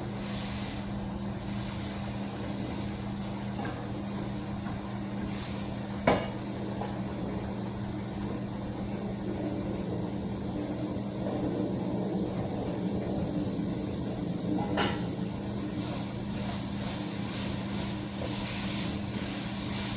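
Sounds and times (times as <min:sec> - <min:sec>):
chicken sizzling in a pan: 0:00.0 - 0:07.5, 0:14.6 - 0:19.9.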